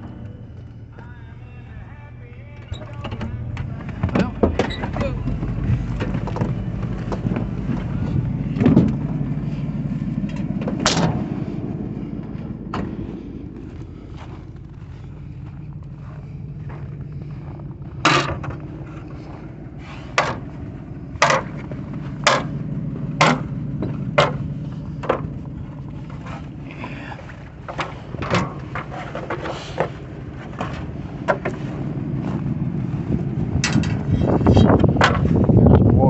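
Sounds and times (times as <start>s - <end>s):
tractor engine running: 0.0s - 36.0s
sharp knocks or clanks: 21.2s - 21.6s, 22.2s - 22.6s, 23.2s - 24.4s.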